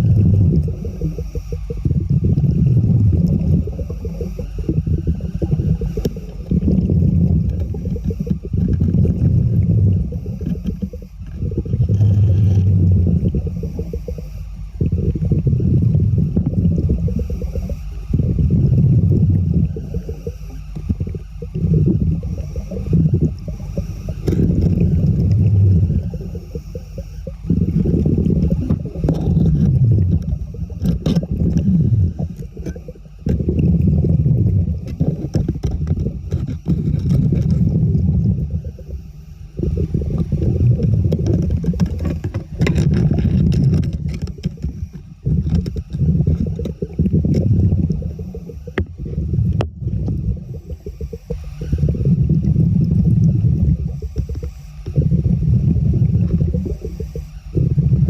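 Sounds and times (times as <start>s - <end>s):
rumbling bubbling water: 0.0s - 58.0s
clicks and scrapes: 27.2s - 33.7s, 34.7s - 37.8s, 39.6s - 50.2s.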